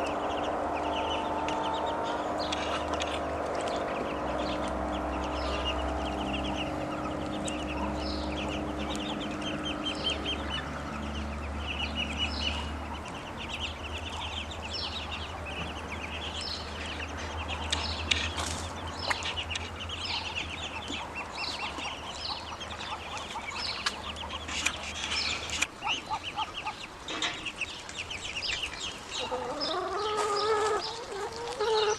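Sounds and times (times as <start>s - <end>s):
ducklings peeping: 0.0s - 31.9s
low steady hum: 0.0s - 31.9s.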